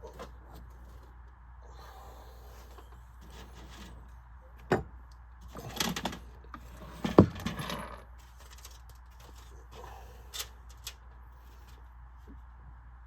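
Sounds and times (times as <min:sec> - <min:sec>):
clatter of fan parts: 0:02.5 - 0:12.5.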